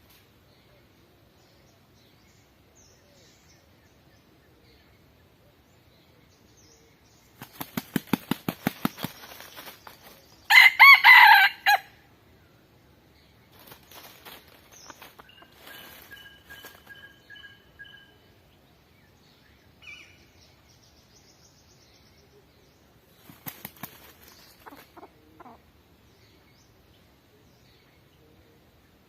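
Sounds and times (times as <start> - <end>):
rooster wings beating: 7.4 - 10.2, 23.2 - 24.3
rooster crowing: 10.5 - 11.9
faint fowl noises: 24.6 - 25.7.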